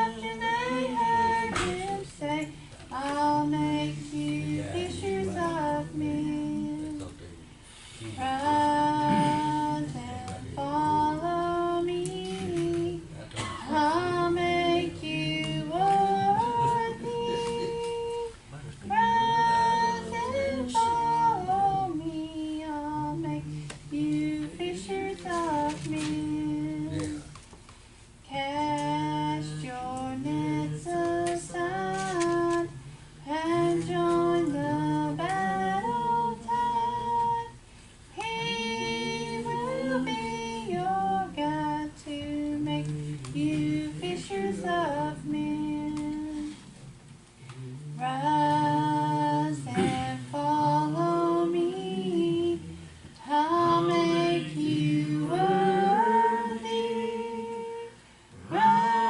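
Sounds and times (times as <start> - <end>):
woman singing a hymn: 0.0 - 7.2, 8.0 - 27.4, 28.2 - 46.9, 47.9 - 59.0.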